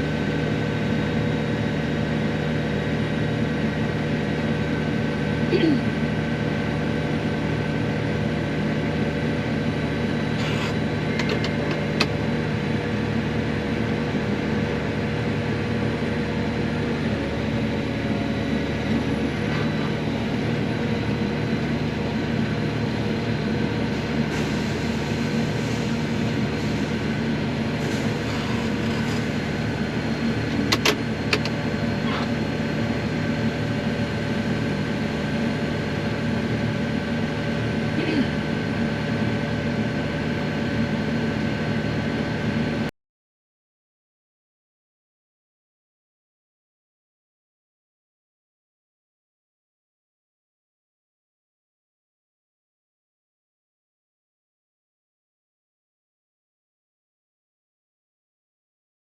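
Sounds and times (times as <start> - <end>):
vehicle engine humming: 0.0 - 42.9.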